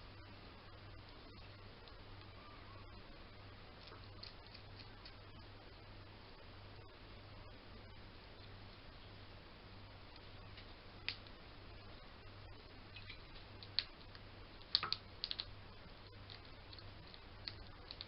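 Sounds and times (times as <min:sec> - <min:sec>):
faint low hum: 0:00.0 - 0:18.0
sharp clicks and taps: 0:14.6 - 0:15.5.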